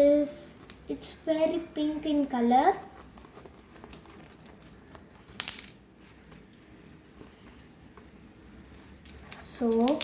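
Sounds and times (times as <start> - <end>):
metal chain strap clinking: 3.2 - 7.8, 8.4 - 10.0.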